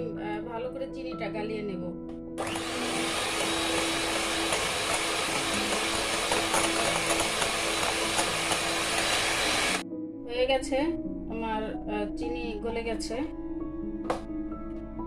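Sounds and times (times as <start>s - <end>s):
electric beater whisking: 2.4s - 9.8s.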